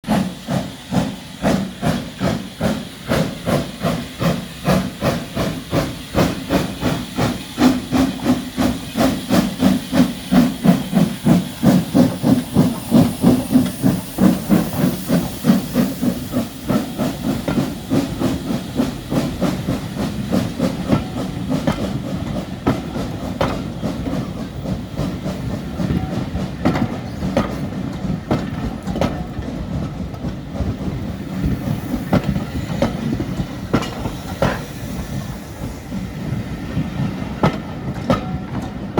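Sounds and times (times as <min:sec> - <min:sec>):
steam hissing: 0:00.0 - 0:38.9
steam locomotive chuffing: 0:00.0 - 0:38.9
wheels clicking over rail joints: 0:36.7 - 0:38.9.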